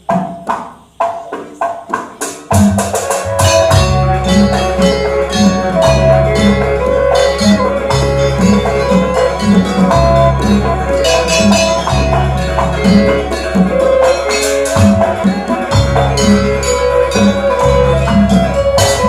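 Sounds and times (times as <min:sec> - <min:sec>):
drum strikes: 0:00.0 - 0:19.0
percussion-led music with bass: 0:00.0 - 0:19.0.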